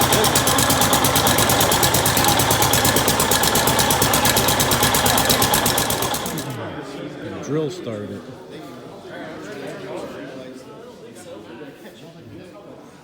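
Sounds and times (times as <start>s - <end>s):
tractor engine running: 0.0s - 6.8s.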